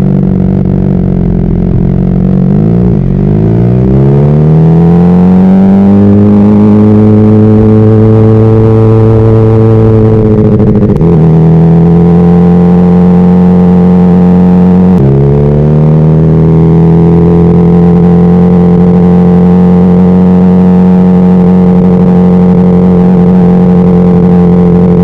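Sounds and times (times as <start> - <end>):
motorcycle engine running: 0.0 - 25.0.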